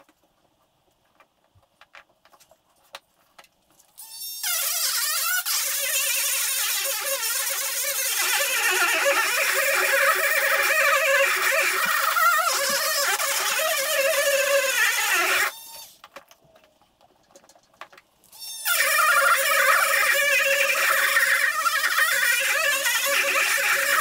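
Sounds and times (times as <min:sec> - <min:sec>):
rotary tool grinding: 0:04.0 - 0:16.0, 0:18.3 - 0:24.0.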